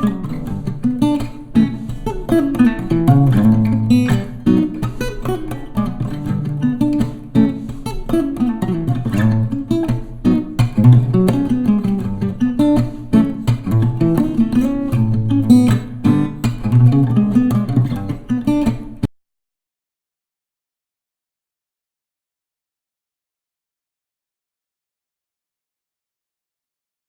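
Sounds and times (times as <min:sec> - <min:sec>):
strummed acoustic guitar: 0:00.0 - 0:19.1.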